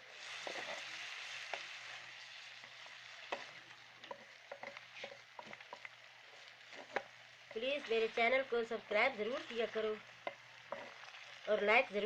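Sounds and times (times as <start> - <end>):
food sizzling in a pan: 0.0 - 12.0
spoon scraping a pan: 0.2 - 7.2, 9.5 - 11.4.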